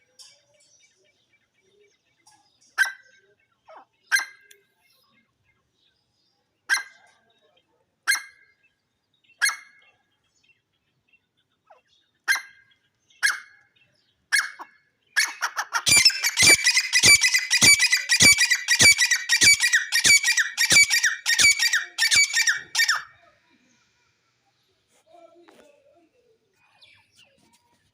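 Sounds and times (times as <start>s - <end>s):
francolin calling: 15.8s - 23.2s.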